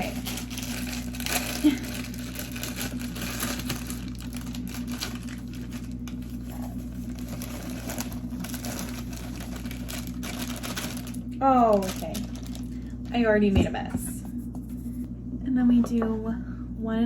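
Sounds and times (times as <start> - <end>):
bag rustling: 0.0 - 12.9
low electrical hum: 0.0 - 17.0.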